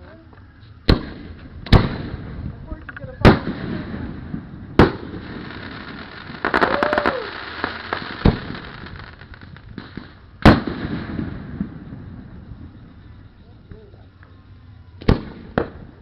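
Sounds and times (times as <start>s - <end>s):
firework shells booming: 0.9s - 2.5s, 3.2s - 12.3s, 15.0s - 16.0s
firework crackling pops: 0.9s - 12.1s, 15.0s - 16.0s.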